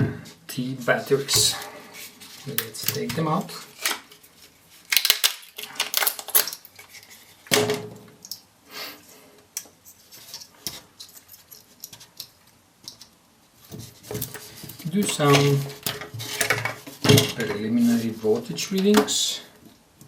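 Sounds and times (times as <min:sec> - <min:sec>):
metal cells and plastic clattering: 0:02.3 - 0:08.5, 0:09.6 - 0:19.4.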